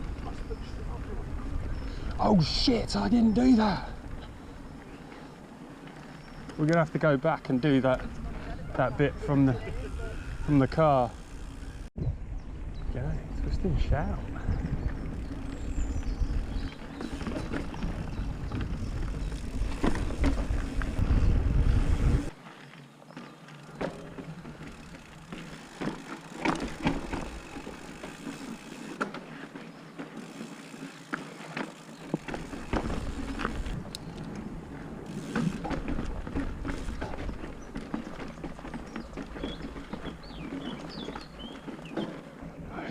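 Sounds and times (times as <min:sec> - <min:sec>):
bike tyres on dirt: 0:00.0 - 0:42.9
wind buffeting microphone: 0:07.9 - 0:22.4
bike rattling and knocking: 0:14.4 - 0:22.4, 0:23.1 - 0:42.4.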